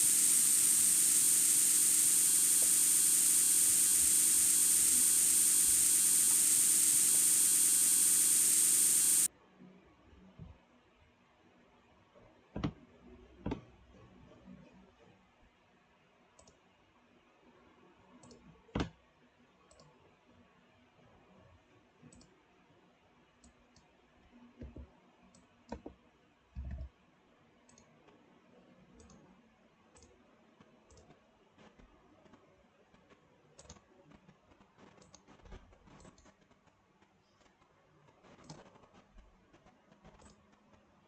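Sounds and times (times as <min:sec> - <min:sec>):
computer mouse clicks: 0:00.0 - 0:09.3, 0:16.4 - 0:16.6, 0:18.2 - 0:18.4, 0:19.7 - 0:19.9, 0:29.0 - 0:29.2, 0:30.9 - 0:31.2, 0:33.6 - 0:33.8, 0:34.9 - 0:35.3, 0:35.9 - 0:36.4, 0:38.3 - 0:38.8, 0:40.1 - 0:40.4.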